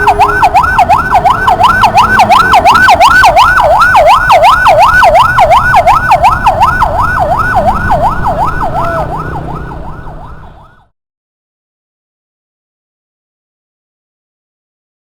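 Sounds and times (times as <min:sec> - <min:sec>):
ambulance siren wailing: 0:00.0 - 0:10.9
low rumble of traffic: 0:00.0 - 0:10.9.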